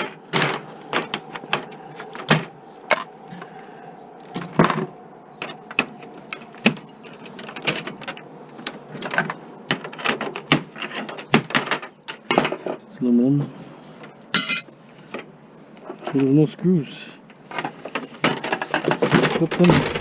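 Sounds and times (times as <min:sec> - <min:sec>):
plastic and metal parts pried apart: 0:17.5 - 0:20.0.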